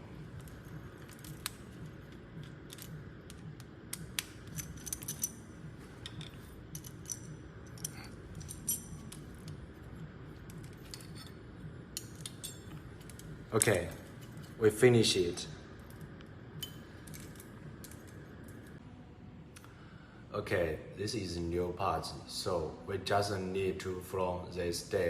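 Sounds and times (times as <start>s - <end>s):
light metallic clinks: 2.4s - 9.6s, 10.4s - 14.6s.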